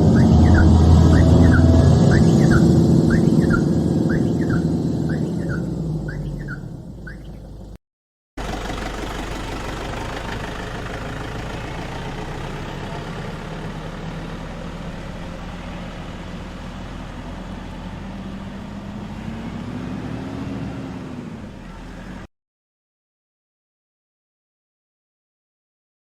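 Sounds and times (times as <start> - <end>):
vehicle engine running: 0.0 - 7.8, 8.4 - 22.3.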